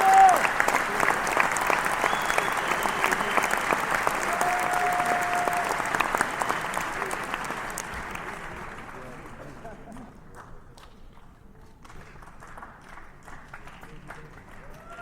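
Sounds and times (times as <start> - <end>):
crowd cheering and clapping: 0.0 - 9.5, 12.2 - 15.0
whistle: 2.0 - 3.6.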